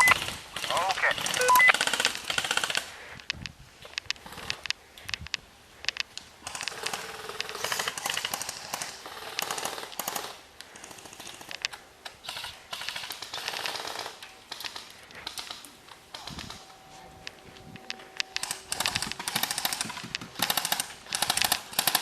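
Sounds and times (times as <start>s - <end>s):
airsoft guns firing: 18.4s - 22.0s.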